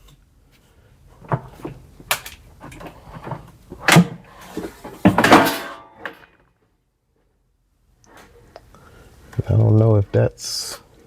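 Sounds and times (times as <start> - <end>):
boxes being handled and shifted: 0.0 - 6.4.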